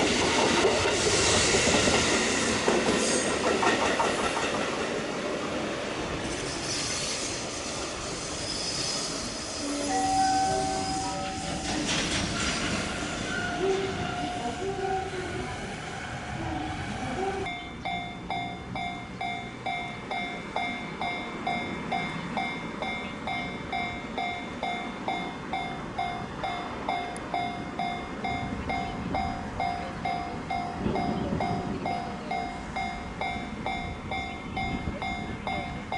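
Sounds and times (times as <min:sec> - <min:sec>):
freight train passing: 0:00.0 - 0:35.9
level-crossing warning bell ringing: 0:09.6 - 0:12.5, 0:13.3 - 0:15.2, 0:17.2 - 0:35.9.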